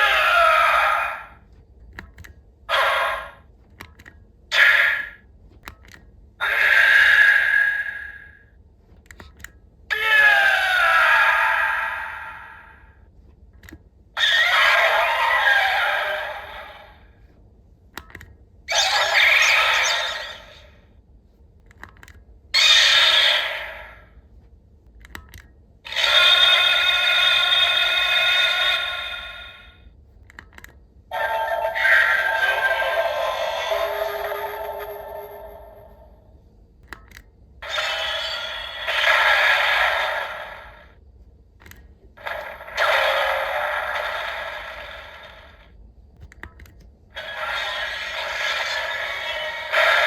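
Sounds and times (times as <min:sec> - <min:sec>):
synthesized toy sound effect: 0:00.0 - 0:01.4, 0:02.7 - 0:03.4, 0:04.5 - 0:05.2, 0:06.4 - 0:08.4, 0:09.9 - 0:12.8, 0:14.2 - 0:17.1, 0:18.7 - 0:20.8, 0:22.6 - 0:24.1, 0:25.9 - 0:29.8, 0:31.1 - 0:36.2, 0:37.6 - 0:41.0, 0:42.2 - 0:45.7, 0:47.2 - 0:50.0
tinny electronic sound effect: 0:47.2 - 0:50.0.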